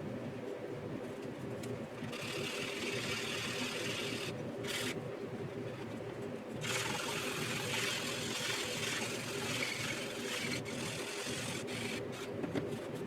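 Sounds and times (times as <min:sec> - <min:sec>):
steady low hum: 0:00.0 - 0:13.0
sanding sponge rubbing plastic: 0:06.6 - 0:12.3.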